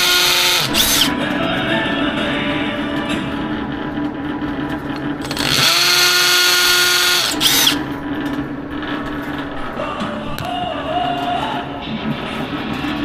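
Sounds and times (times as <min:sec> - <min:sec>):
power drill running: 0:00.0 - 0:01.1, 0:05.2 - 0:07.8.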